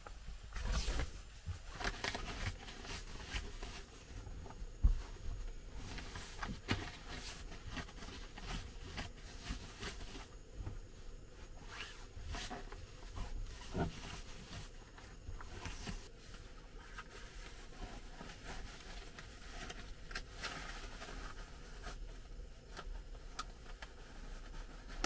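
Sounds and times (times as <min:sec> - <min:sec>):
rustling and clicking of handling: 0:00.0 - 0:25.0.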